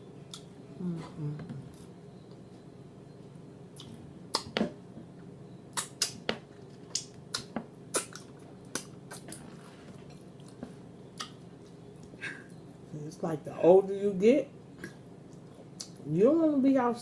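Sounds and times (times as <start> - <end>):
chewing and mouth smacking: 5.7 - 12.2.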